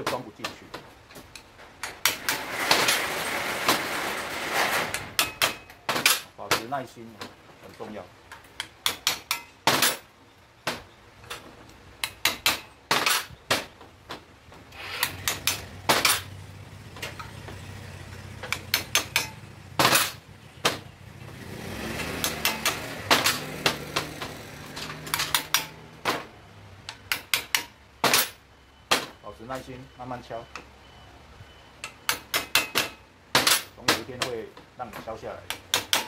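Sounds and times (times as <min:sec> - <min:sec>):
hammer striking metal: 0:05.2 - 0:06.7, 0:18.4 - 0:20.8, 0:22.0 - 0:26.3, 0:26.9 - 0:29.2, 0:31.8 - 0:34.3.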